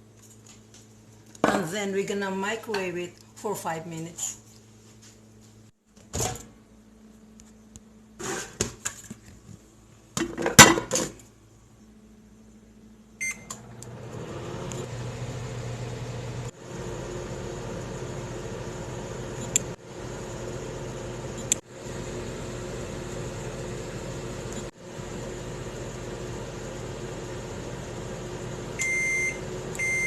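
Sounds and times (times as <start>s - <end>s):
microwave oven humming: 11.4s - 30.0s.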